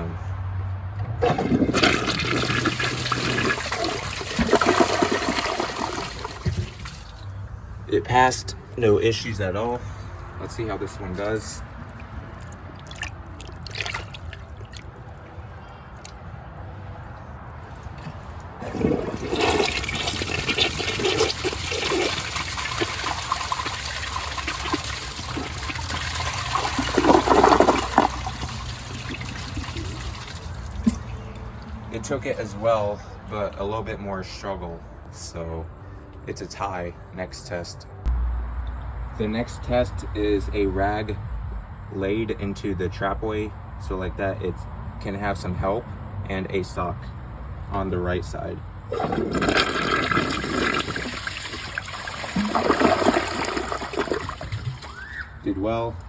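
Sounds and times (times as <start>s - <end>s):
toilet flushing: 1.2s - 7.3s, 18.6s - 31.1s, 48.9s - 55.0s
gurgling water: 1.2s - 7.4s, 11.9s - 15.2s, 18.0s - 31.8s, 48.9s - 55.2s.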